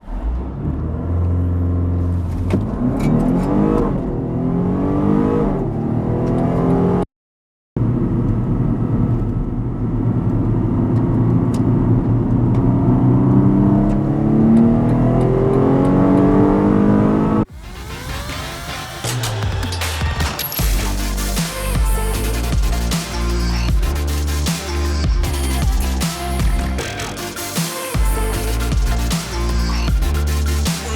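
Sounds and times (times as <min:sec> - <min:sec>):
car accelerating: 0:10.8 - 0:17.5.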